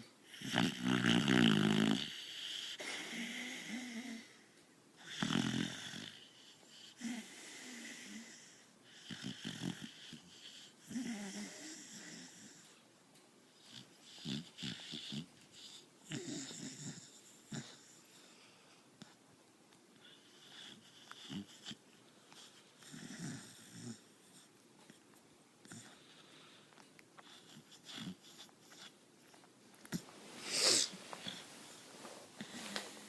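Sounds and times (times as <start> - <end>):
dog snoring: 0.3 - 4.4, 5.0 - 12.8, 13.6 - 18.3, 20.0 - 21.8, 22.4 - 25.0, 25.6 - 26.2, 27.2 - 28.9.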